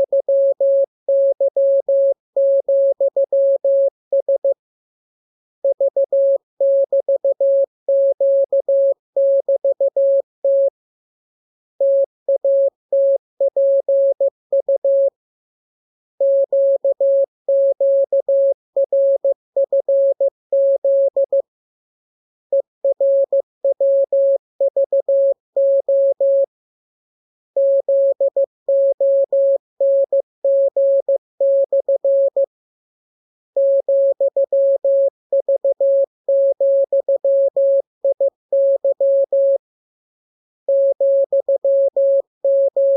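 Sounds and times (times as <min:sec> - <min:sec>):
morse code beeps: 0:40.7 - 0:42.9.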